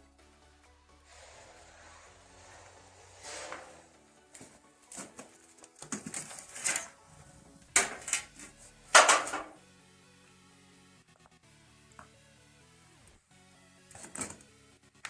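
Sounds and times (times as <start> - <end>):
faint background music: 0.0 - 15.0
metal trowel scraping mortar: 1.1 - 5.3, 5.9 - 7.0.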